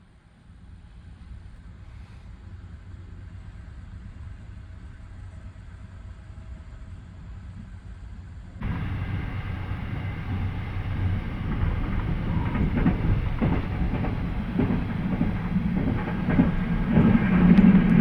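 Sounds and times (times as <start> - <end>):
train rumble on rails: 8.6 - 18.0
wheels clicking over track: 8.6 - 18.0.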